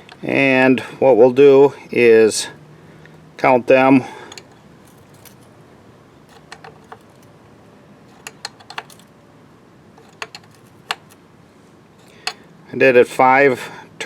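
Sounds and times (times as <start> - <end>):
wrench clinking on bolt: 4.3 - 5.5, 6.3 - 7.3, 8.1 - 9.1, 10.0 - 11.2, 12.0 - 12.4.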